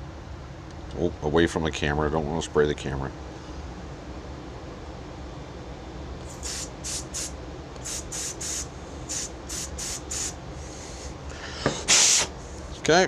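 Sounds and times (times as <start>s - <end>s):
aerosol spray hissing bursts: 6.3s - 11.2s, 11.8s - 12.4s.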